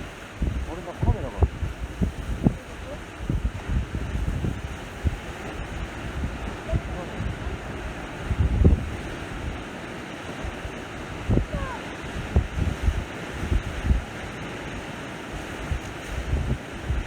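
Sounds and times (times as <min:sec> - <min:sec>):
sea waves washing on shore: 0:00.0 - 0:17.0
wind gusting on microphone: 0:00.0 - 0:17.0.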